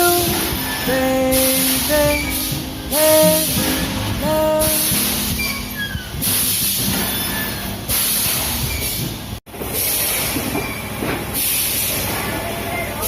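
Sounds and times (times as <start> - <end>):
high hiss of air: 0.0 - 5.6.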